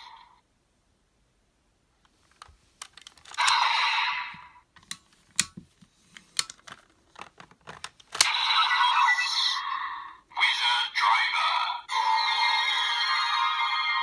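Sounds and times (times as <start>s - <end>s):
plastic toy clicks and snaps: 2.3s - 3.6s, 4.8s - 8.5s.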